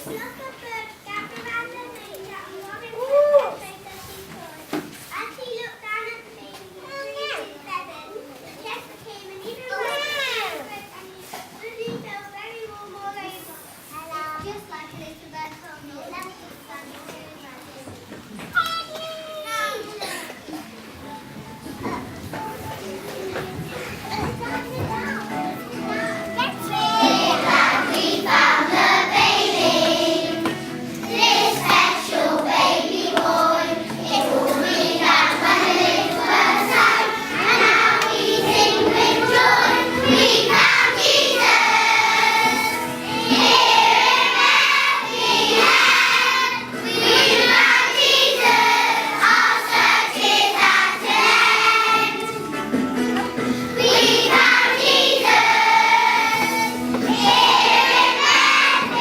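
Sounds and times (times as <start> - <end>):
children singing together: 20.0 - 59.0.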